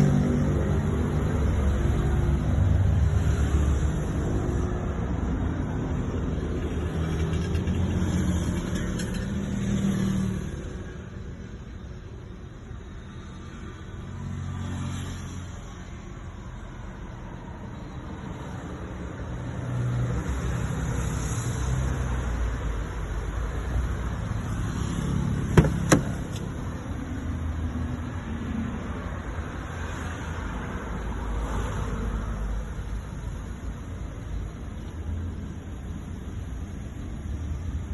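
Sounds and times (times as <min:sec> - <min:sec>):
car engine rumble: 0:23.9 - 0:29.7.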